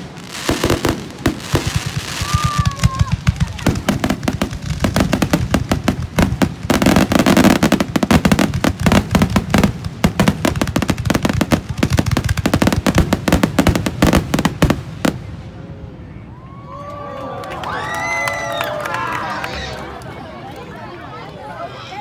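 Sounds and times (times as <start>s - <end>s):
fireworks crackling: 0.0s - 15.4s.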